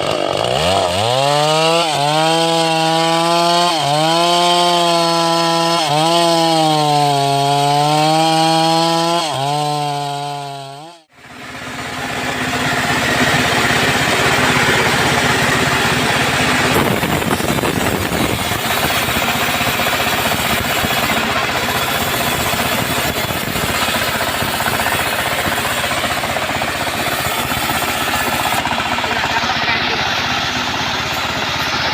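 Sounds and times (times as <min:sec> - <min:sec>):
chainsaw sawing wood: 0:00.0 - 0:31.9.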